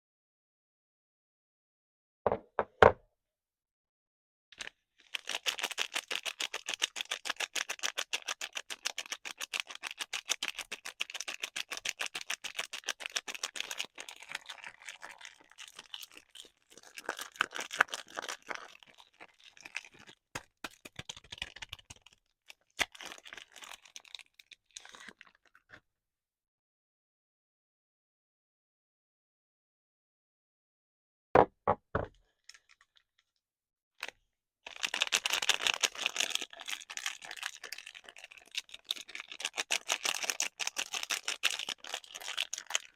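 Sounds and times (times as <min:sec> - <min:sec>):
packaging crinkling: 0:04.6 - 0:22.2, 0:22.8 - 0:25.5, 0:34.7 - 0:42.9.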